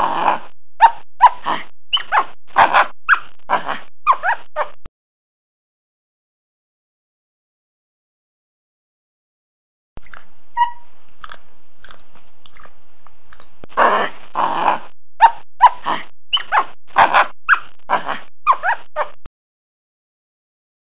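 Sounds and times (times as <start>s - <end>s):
monkey chirping and chattering: 1.2s - 4.8s, 10.0s - 14.1s, 15.2s - 19.2s.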